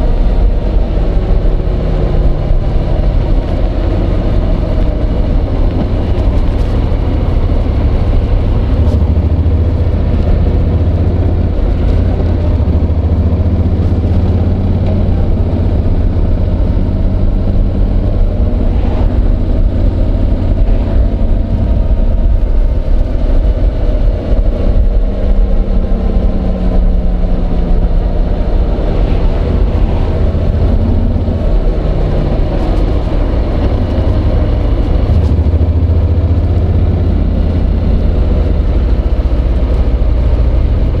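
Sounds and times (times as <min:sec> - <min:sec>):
heavy low rumble: 0:00.0 - 0:41.0
motorcycle engine running: 0:00.0 - 0:41.0.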